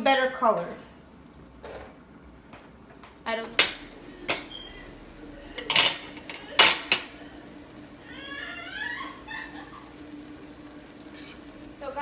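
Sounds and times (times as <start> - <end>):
high wavering whine: 3.4 - 12.0
spoon knocking on cooking pot: 3.5 - 5.0, 5.6 - 7.3, 9.1 - 11.8.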